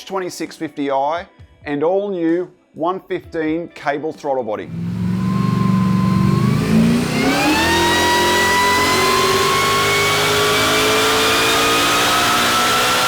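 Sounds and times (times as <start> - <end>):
car engine revving: 4.6 - 13.0.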